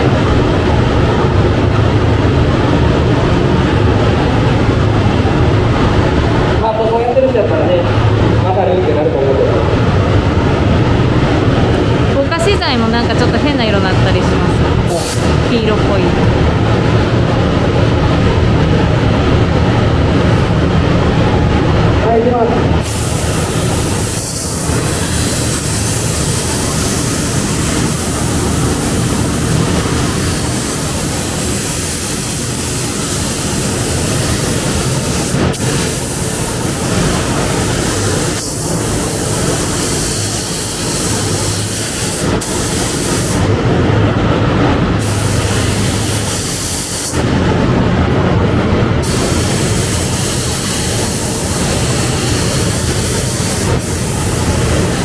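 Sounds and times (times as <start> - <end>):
ventilation fan droning: 0.0 - 55.0
paint spray gun hissing: 22.8 - 43.5, 45.0 - 47.2, 49.0 - 55.0.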